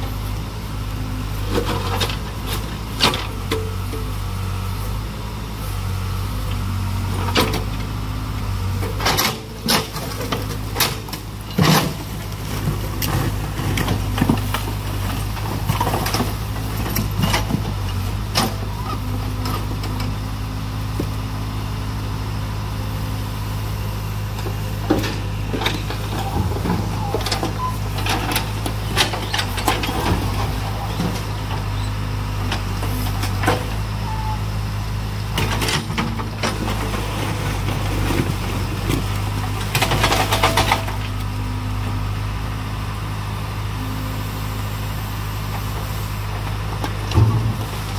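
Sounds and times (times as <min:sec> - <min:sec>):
diesel engine running: 0:00.0 - 0:47.9
sharp knocks and clanks: 0:47.1 - 0:47.9.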